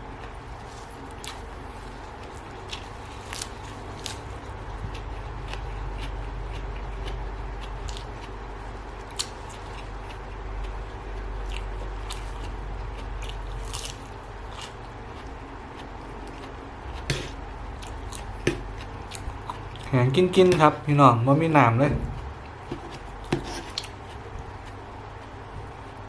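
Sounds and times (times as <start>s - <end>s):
steady low hum: 0.0s - 26.0s
salad ingredients crunching: 0.2s - 8.3s, 11.4s - 19.9s.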